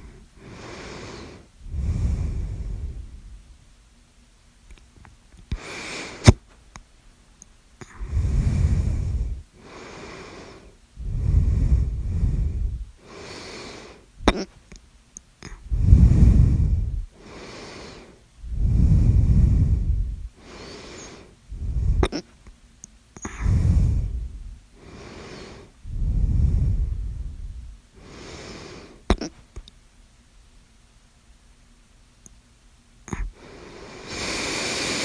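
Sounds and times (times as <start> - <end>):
person breathing heavily: 0.0 - 3.6, 5.6 - 6.4, 7.8 - 14.2, 15.5 - 22.2, 23.2 - 29.1, 33.1 - 35.0.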